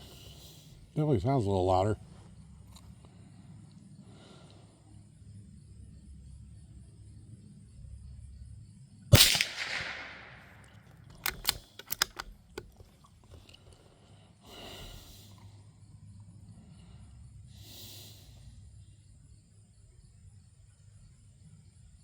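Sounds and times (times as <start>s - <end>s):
rifle shot: 9.1s - 12.2s
rifle bolt clicking: 9.2s - 12.9s.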